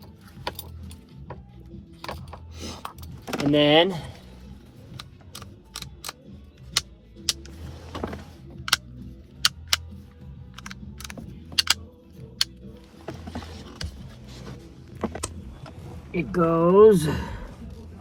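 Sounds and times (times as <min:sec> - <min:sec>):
plastic clicks and snaps: 0:04.9 - 0:07.5, 0:09.4 - 0:09.9, 0:10.6 - 0:11.8.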